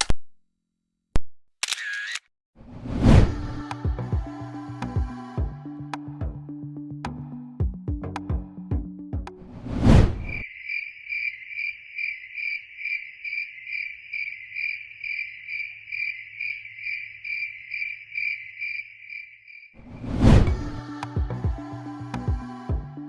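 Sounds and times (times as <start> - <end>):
short loud whoosh: 2.8 - 3.5, 9.6 - 10.4, 19.9 - 20.7
cricket chirping: 10.2 - 19.8.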